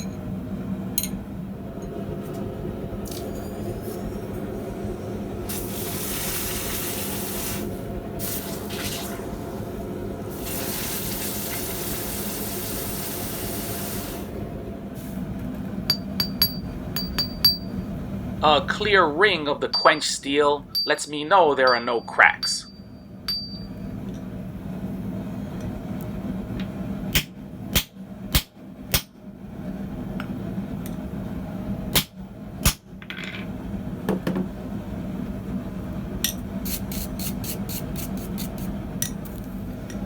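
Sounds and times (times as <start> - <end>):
steady low hum: 0.0 - 11.4, 14.2 - 40.0
hot steel hissing in water: 5.4 - 9.6, 10.3 - 14.4, 36.6 - 38.7
light ringing taps on steel: 15.9 - 17.7.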